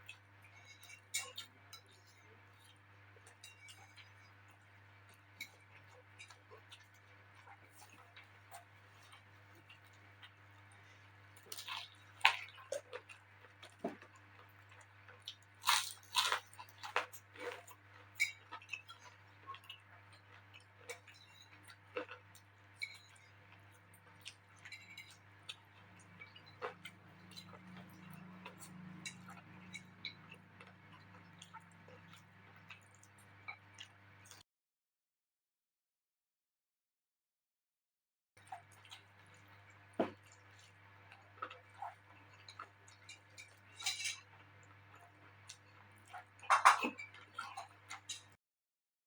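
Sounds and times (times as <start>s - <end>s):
person chewing crispy chicken: 0.0s - 34.4s, 38.4s - 48.3s.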